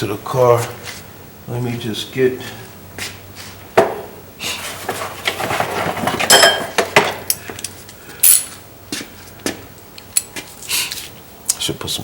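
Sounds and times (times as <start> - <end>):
metal tools clattering: 4.6 - 8.6.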